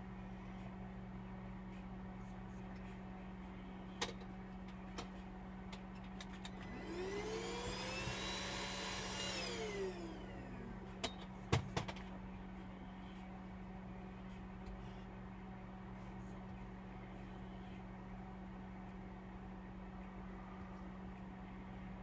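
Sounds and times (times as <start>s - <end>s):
electric screwdriver motor: 6.7s - 10.8s.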